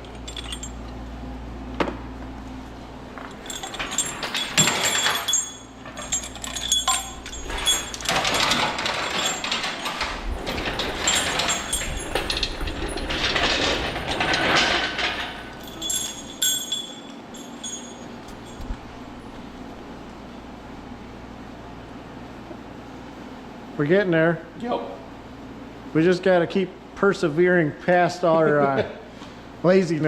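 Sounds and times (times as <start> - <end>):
metal hand tools clinking: 3.2 - 18.7.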